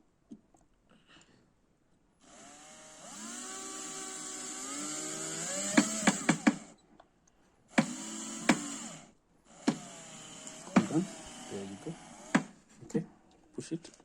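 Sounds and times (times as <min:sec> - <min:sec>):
cordless power tool motor whirring: 0:02.2 - 0:06.8, 0:07.7 - 0:12.6.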